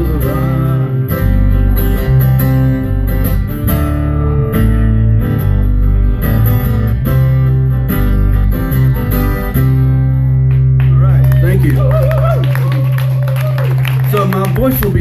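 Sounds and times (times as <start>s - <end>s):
acoustic guitar strumming chords: 0.0s - 11.5s.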